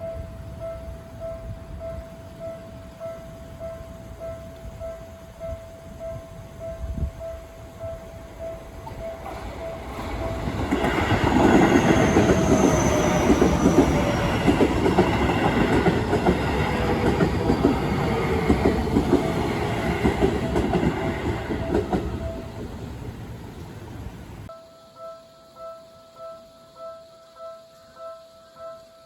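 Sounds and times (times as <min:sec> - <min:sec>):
train whine: 0:00.0 - 0:24.6
train wheels clattering over rail joints: 0:09.1 - 0:23.4.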